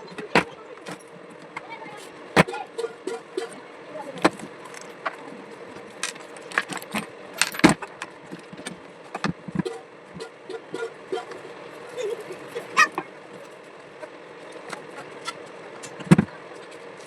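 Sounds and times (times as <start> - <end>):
small metal parts clinking: 4.6 - 5.0, 5.9 - 8.1.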